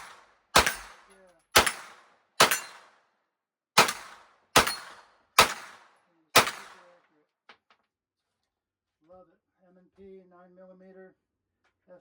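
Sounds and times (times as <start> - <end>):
gunshots: 0.0 - 2.9, 3.8 - 6.9.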